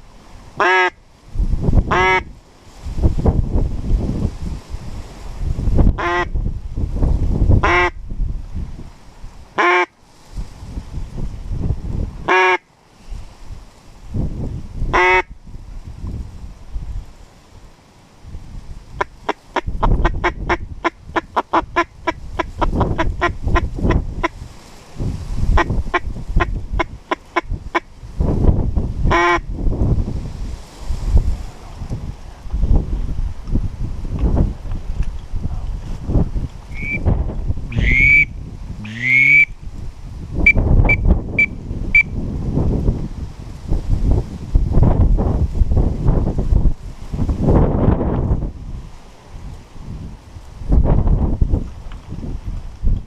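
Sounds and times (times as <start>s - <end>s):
duck quacking: 0.6s - 1.0s, 1.9s - 2.3s, 6.0s - 6.3s, 7.6s - 8.0s, 9.6s - 9.9s, 12.3s - 12.6s, 14.9s - 15.3s, 29.1s - 29.4s, 36.8s - 37.0s, 37.7s - 39.5s
wind buffeting microphone: 1.3s - 9.6s, 10.3s - 12.4s, 13.0s - 17.2s, 18.3s - 53.0s
whistle blowing high notes: 36.7s - 37.1s, 37.7s - 39.5s.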